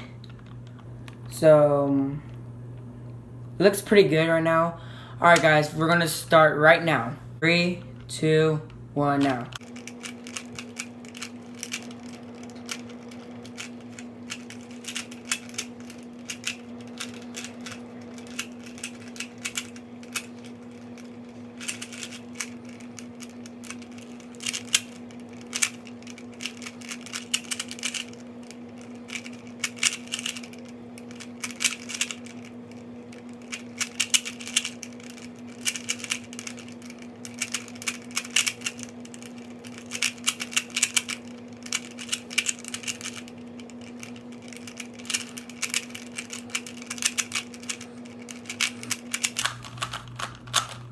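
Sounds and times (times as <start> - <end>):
steady low hum: 0.0 - 50.9
plastic puzzle cube clicking: 10.0 - 20.3, 29.1 - 32.3, 33.5 - 43.2, 44.1 - 50.9.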